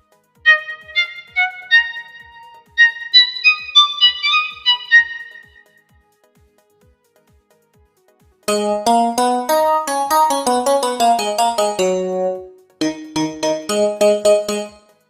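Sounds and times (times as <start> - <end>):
synthesizer melodic phrase: 0.5 - 5.6, 8.5 - 14.9.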